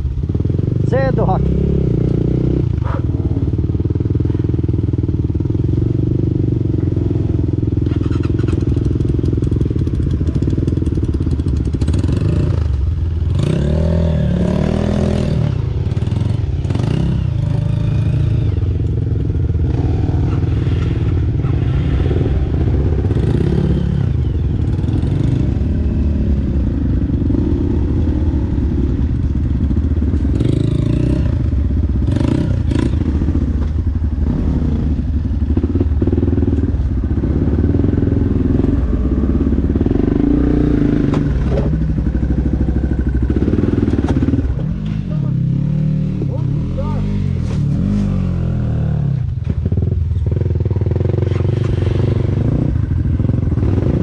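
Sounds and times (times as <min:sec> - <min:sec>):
dirt bike engine revving: 0:11.6 - 0:33.6, 0:34.2 - 0:54.0.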